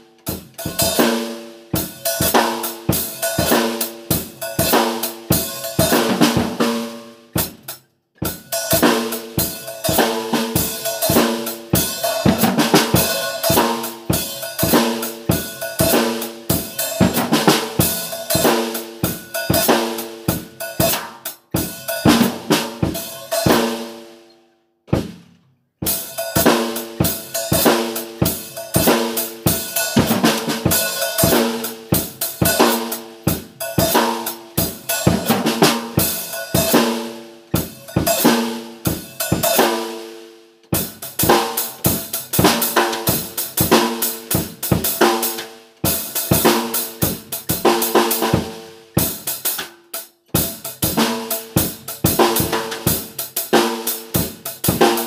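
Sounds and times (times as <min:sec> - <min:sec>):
drum kit beat with chords: 0:00.0 - 0:24.2, 0:24.9 - 0:55.0.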